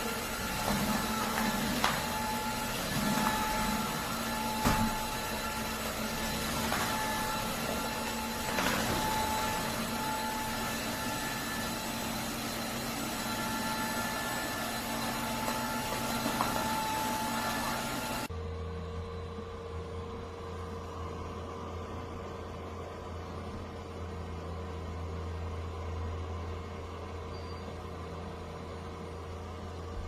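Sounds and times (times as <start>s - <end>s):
vacuum mop motor whirring: 0.0s - 18.3s.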